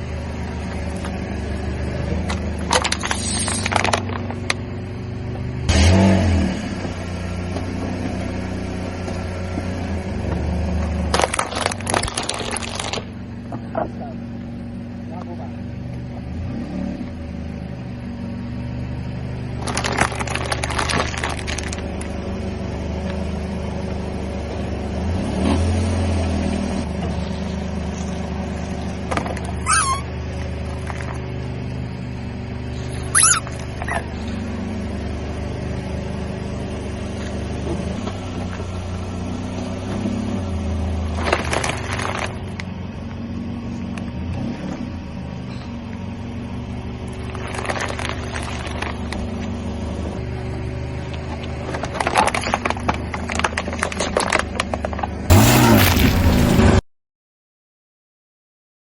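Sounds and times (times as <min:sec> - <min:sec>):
car engine running: 0:00.0 - 0:25.2, 0:26.2 - 0:56.8
tire crushing objects: 0:02.0 - 0:04.9, 0:06.9 - 0:13.2, 0:19.5 - 0:22.2, 0:40.9 - 0:42.8, 0:47.2 - 0:49.6, 0:51.1 - 0:56.8
sharp falling squeaks: 0:02.8 - 0:03.9, 0:29.6 - 0:30.2, 0:32.8 - 0:34.3, 0:55.3 - 0:56.8.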